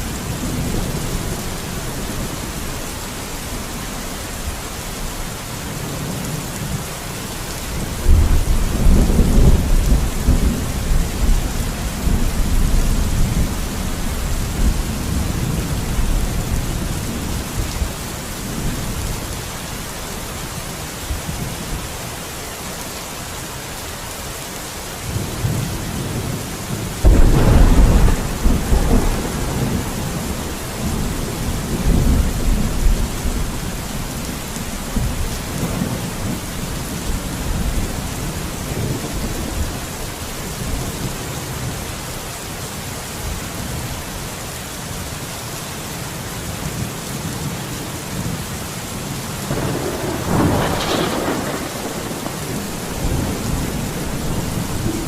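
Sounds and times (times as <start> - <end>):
steady rainfall: 0.0 - 55.0
thunder clapping and rumbling: 7.7 - 19.2, 25.1 - 41.1, 49.4 - 55.0.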